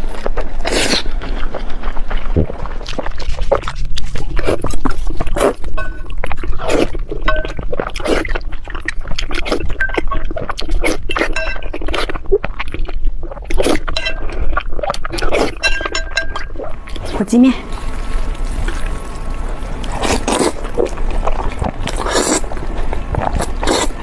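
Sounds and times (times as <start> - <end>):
wet bites and chewing: 0.0 - 24.0
utensils clinking on dish: 5.7 - 6.2, 7.2 - 7.6, 11.2 - 12.0, 13.9 - 14.6, 15.5 - 16.7.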